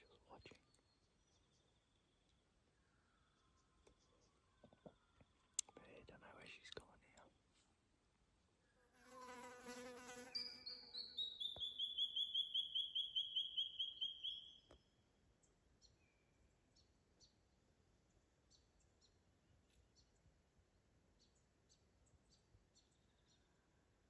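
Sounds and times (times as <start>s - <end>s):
faint chirps and ticks: 0.0s - 7.8s, 10.1s - 20.4s
fly buzzing: 9.0s - 11.2s.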